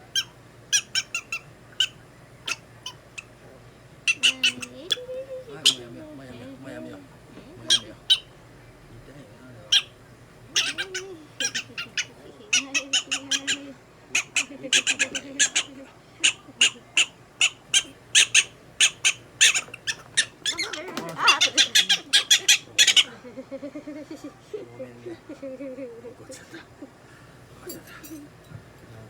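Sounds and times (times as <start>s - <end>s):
prairie dog chirping barks: 0.1s - 3.4s, 4.0s - 5.9s, 7.6s - 8.4s, 9.7s - 23.2s.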